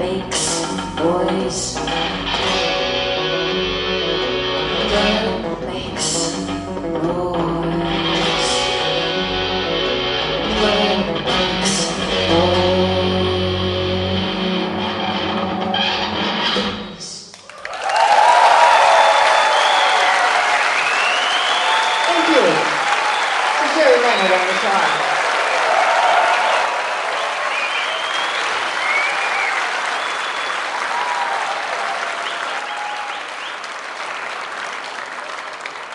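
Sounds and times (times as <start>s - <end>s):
steady bass line: 0.0s - 17.0s
live band with guitar: 0.0s - 17.2s
audience applauding and cheering: 17.3s - 35.9s
high whistles in crowd: 18.9s - 25.2s, 25.8s - 33.8s.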